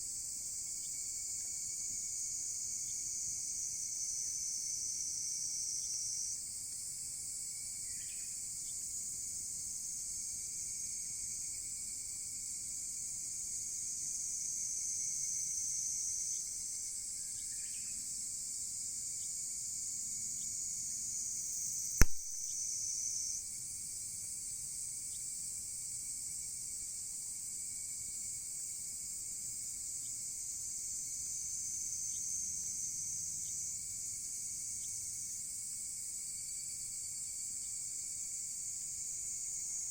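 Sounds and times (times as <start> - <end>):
campfire wood popping: 22.0 - 22.4.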